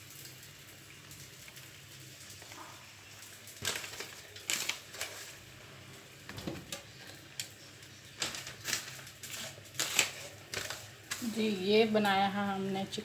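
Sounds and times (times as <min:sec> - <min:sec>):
utensils clattering against a dish: 0:08.2 - 0:11.6.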